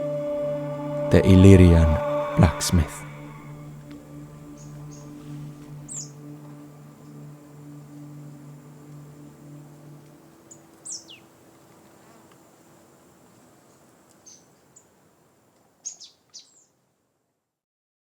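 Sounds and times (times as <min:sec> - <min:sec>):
low held music note: 0:00.0 - 0:06.0
faint high insect-like tone: 0:00.0 - 0:17.3
high bird chirps: 0:15.8 - 0:16.7.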